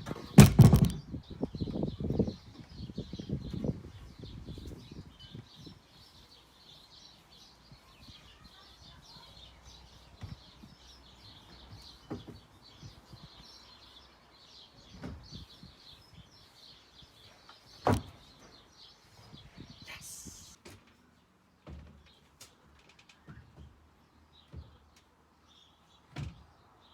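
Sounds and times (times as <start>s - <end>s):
birds chirping: 0.7s - 20.6s.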